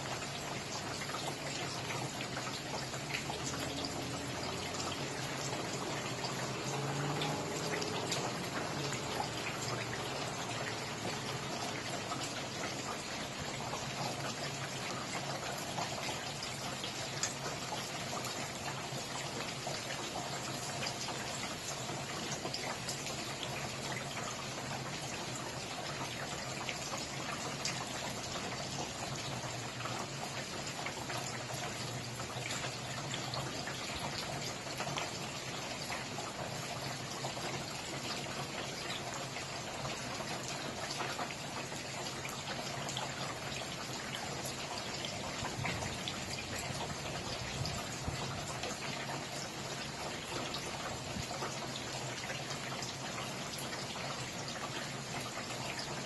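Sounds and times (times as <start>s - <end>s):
running water: 0.0s - 56.0s
steady rain: 0.0s - 56.0s.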